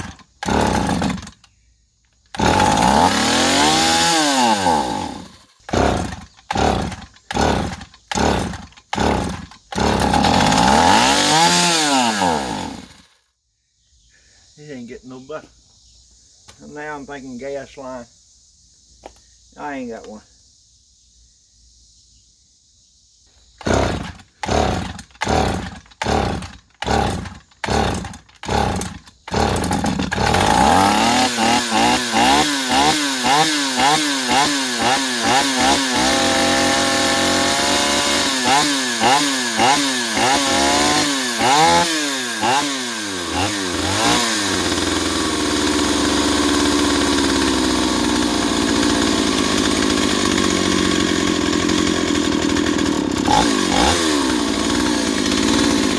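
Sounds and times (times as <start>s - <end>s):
chainsaw engine revving: 0.0s - 1.5s, 2.3s - 13.1s, 23.6s - 55.9s
chainsaw starter rope pulls: 0.0s - 1.5s, 2.3s - 13.1s, 23.6s - 55.9s.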